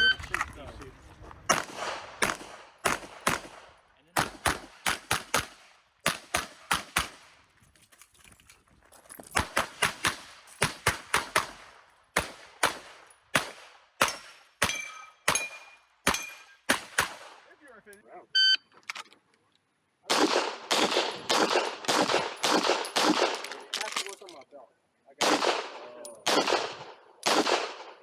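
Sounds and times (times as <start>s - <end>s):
pistol shots: 1.5s - 7.3s, 9.4s - 17.5s, 20.1s - 23.8s, 25.2s - 28.0s.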